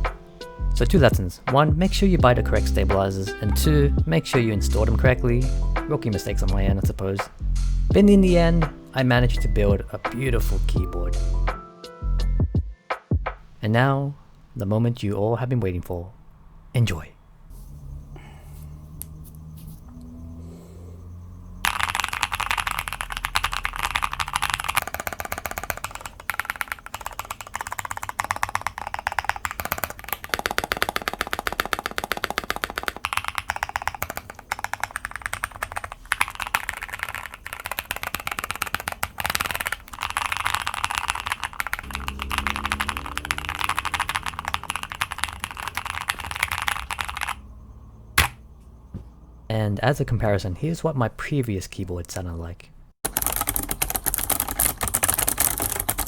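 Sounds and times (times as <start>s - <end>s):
soft background music: 0.0s - 13.8s, 41.9s - 44.9s
typing on mechanical keyboard: 21.6s - 47.4s, 53.0s - 56.0s.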